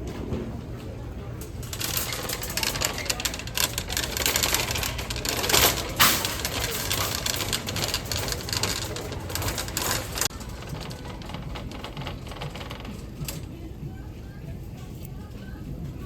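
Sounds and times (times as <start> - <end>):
irregular clicking and clattering: 0.0 - 13.6.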